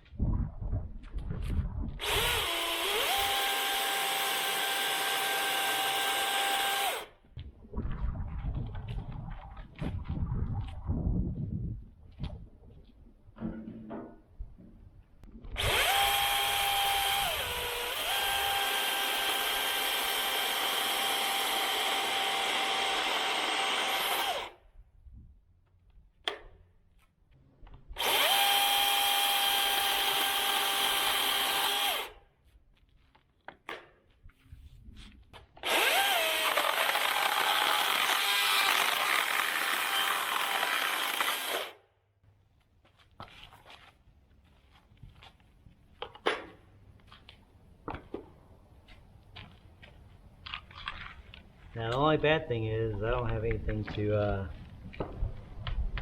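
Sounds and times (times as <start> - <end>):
battery chainsaw whining: 2.0 - 7.1, 15.6 - 24.6, 28.0 - 32.2, 35.6 - 41.8.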